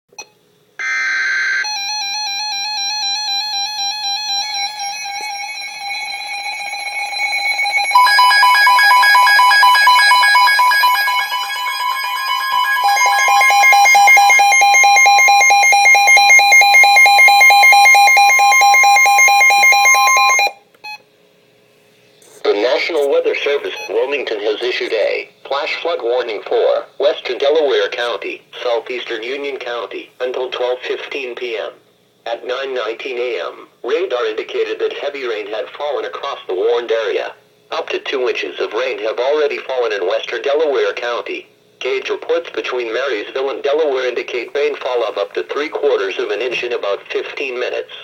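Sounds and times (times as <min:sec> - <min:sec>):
electronic multi-tone alarm: 0:00.8 - 0:21.0
warbling digital data burst: 0:04.4 - 0:20.5.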